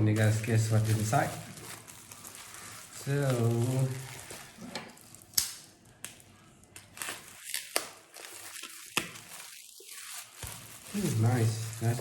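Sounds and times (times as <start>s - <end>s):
packaging crinkling and rustling: 0.0s - 12.0s
sharp snaps and cracks: 3.0s - 11.1s.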